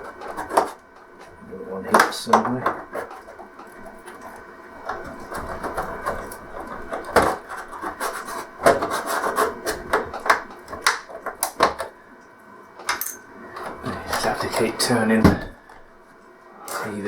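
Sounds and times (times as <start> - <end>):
plastic pick scraping plastic: 0.0 - 12.0.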